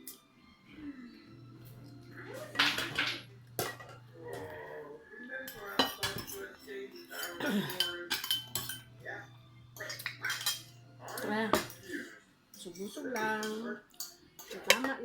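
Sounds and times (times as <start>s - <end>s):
cutlery clinking on plates: 2.5s - 4.5s, 5.4s - 9.0s, 9.7s - 15.0s.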